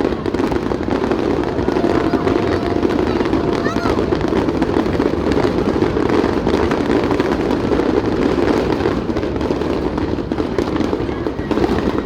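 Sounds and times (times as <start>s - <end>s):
fireworks rumbling and crackling: 0.0s - 12.0s.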